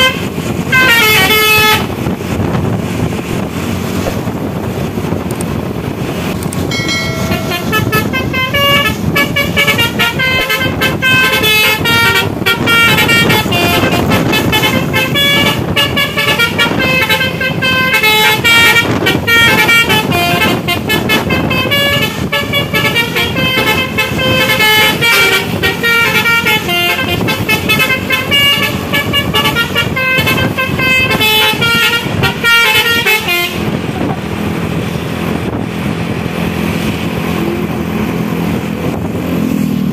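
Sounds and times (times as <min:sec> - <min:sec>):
bus engine running: 0:00.0 - 0:39.9
road noise: 0:00.0 - 0:39.9
musical air horn tune: 0:06.7 - 0:33.8.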